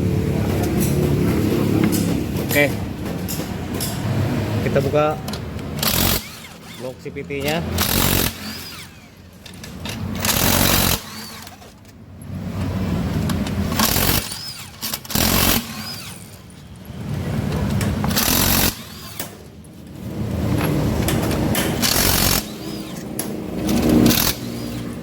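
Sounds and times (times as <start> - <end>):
tool handling: 0.5 - 12.0, 12.6 - 25.0
impact wrench bursts: 1.9 - 11.8, 12.6 - 25.0.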